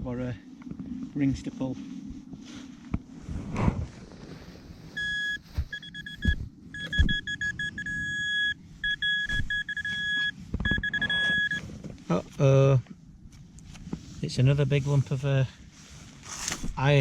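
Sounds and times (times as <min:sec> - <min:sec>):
metal detector beeps: 0:05.0 - 0:11.7.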